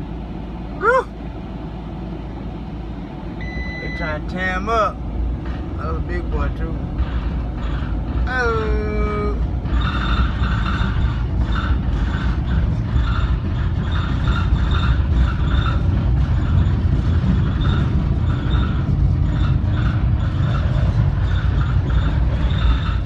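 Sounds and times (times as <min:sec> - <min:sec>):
vehicle road rumble: 0:00.0 - 0:23.0
short rattle or squeak: 0:09.7 - 0:12.4.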